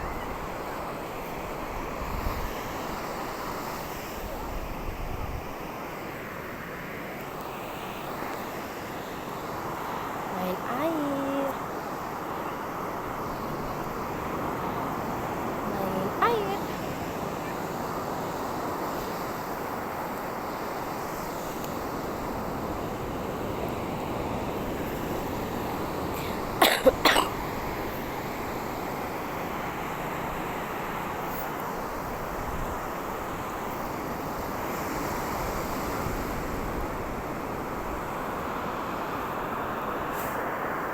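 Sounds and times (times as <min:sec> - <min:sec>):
steady background noise: 0:05.7 - 0:36.0
man coughing: 0:26.6 - 0:27.3.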